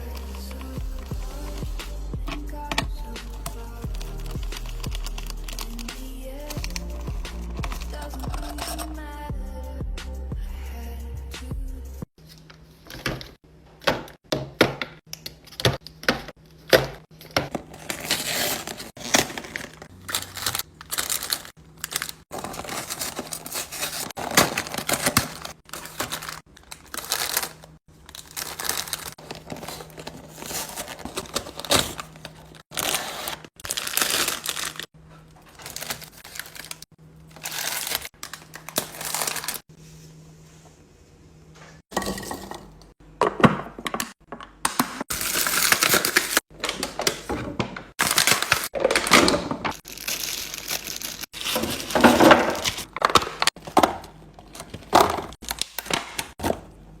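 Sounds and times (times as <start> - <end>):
packaging crinkling and tearing: 0.0 - 9.0, 17.2 - 39.7, 45.1 - 47.3, 48.0 - 56.6.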